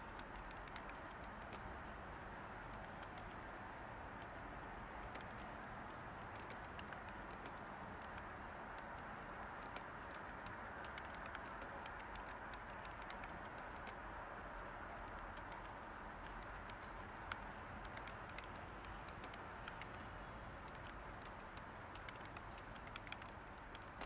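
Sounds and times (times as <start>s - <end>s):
typing on computer keyboard: 0.0s - 1.7s, 2.7s - 3.4s, 5.0s - 14.1s, 15.0s - 20.0s, 20.6s - 24.0s
white noise hiss: 0.0s - 24.0s.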